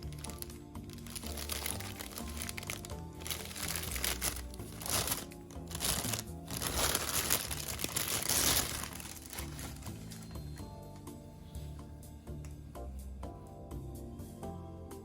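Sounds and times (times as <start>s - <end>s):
packaging crinkling: 0.0s - 10.4s
background music: 0.0s - 15.0s.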